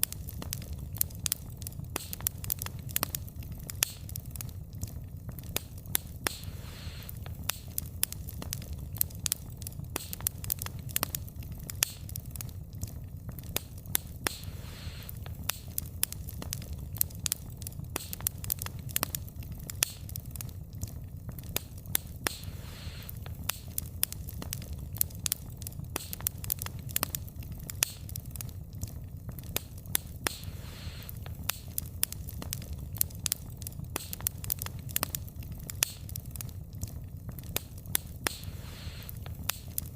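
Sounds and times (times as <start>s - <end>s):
wood fire crackling: 0.0s - 39.9s
brief hiss: 6.3s - 7.2s, 14.3s - 15.2s, 30.3s - 31.2s, 38.3s - 39.2s.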